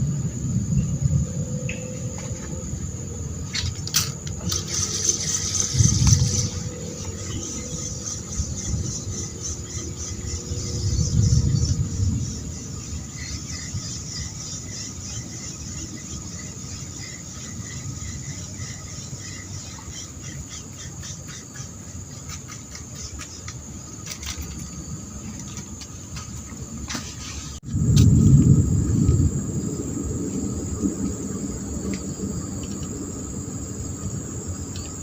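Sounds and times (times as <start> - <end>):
high-pitched insect drone: 0.0 - 26.6
scattered clicks: 3.5 - 6.4
low rumble: 27.6 - 35.0.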